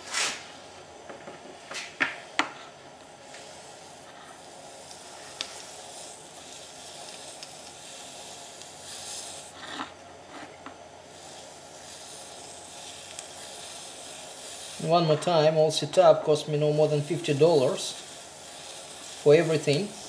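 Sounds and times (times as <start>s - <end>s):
electrolyte sizzling: 3.5s - 9.6s, 11.0s - 15.8s, 16.4s - 20.0s.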